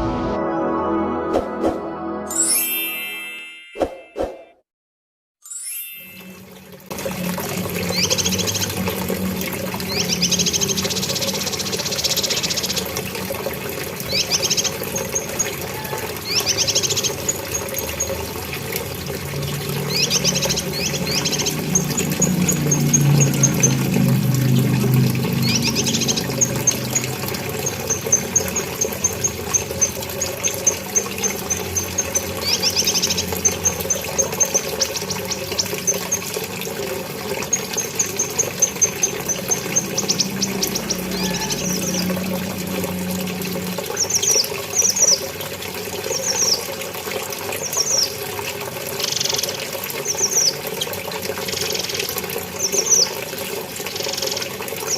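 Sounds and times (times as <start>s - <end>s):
songbird calling: 37.9s - 42.1s.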